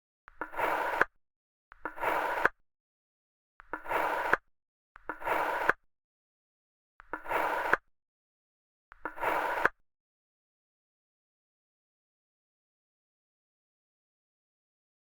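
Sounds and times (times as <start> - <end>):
knife slicing sand: 0.5 - 1.1, 1.9 - 2.6, 3.8 - 4.4.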